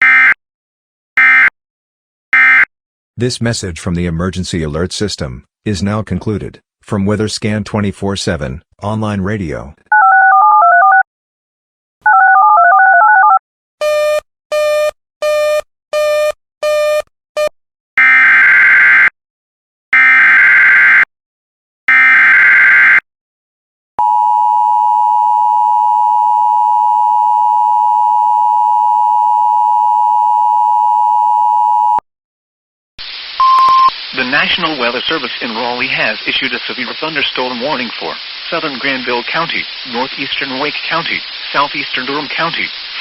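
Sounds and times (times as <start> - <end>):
short beeps: 33.4 - 33.9.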